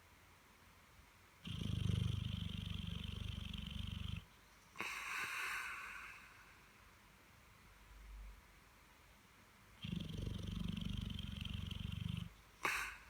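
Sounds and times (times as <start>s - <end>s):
dog snoring: 1.4s - 4.2s, 9.8s - 13.0s
dog hissing breath: 9.8s - 13.0s.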